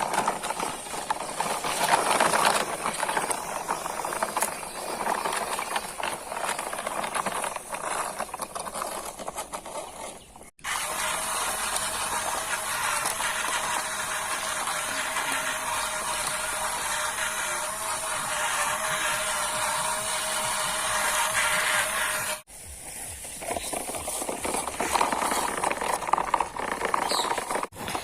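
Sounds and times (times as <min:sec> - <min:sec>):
machinery rattling and clicking: 0:00.0 - 0:10.5, 0:23.4 - 0:28.0.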